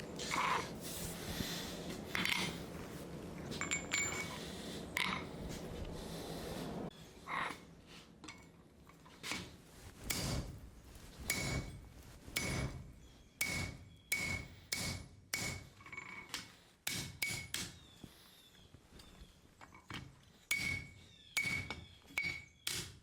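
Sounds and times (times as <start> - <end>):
hammer striking hot steel on anvil: 10.0 - 10.6, 11.2 - 17.8, 20.5 - 23.0.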